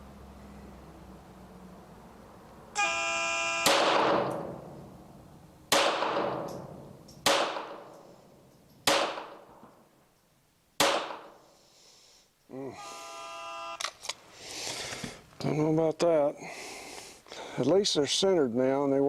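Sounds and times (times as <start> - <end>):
start tone: 2.8 - 3.7
pistol shots with echo: 3.6 - 4.8, 5.7 - 8.0, 8.8 - 9.7, 10.8 - 11.4.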